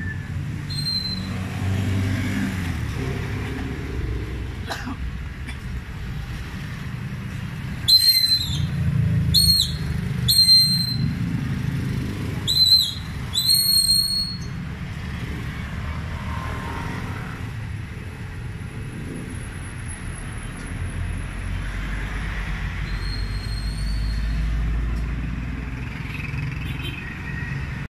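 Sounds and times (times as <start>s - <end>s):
high whistle-like chirps: 0.0s - 1.4s, 7.8s - 8.7s, 9.3s - 11.2s, 12.5s - 14.5s.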